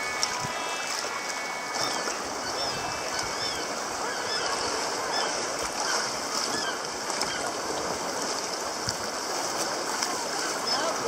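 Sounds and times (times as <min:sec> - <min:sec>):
sea water washing: 0:00.0 - 0:11.0
birds calling: 0:00.2 - 0:07.5.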